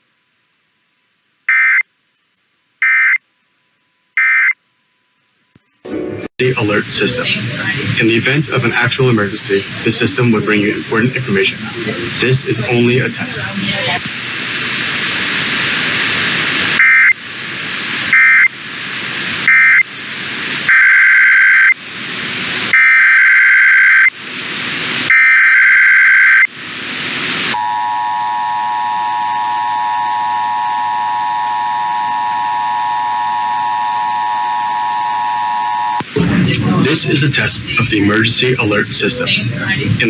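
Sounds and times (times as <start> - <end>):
digital data bursts: 0.0 - 6.3
radio hiss: 0.0 - 22.5, 36.0 - 40.0
two-tone attention signal: 1.5 - 1.8, 2.8 - 3.2, 4.2 - 4.6, 5.6 - 6.3.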